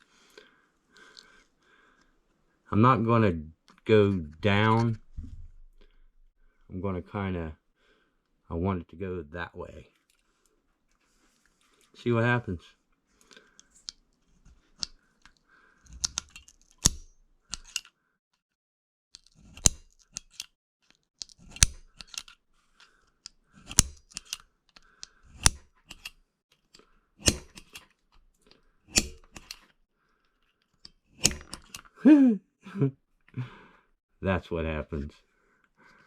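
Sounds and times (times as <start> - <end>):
spring punch snapping on flint: 15.9 - 17.9, 19.2 - 20.5, 21.2 - 22.3, 23.2 - 26.2, 27.2 - 27.8, 28.9 - 29.7, 30.8 - 31.9.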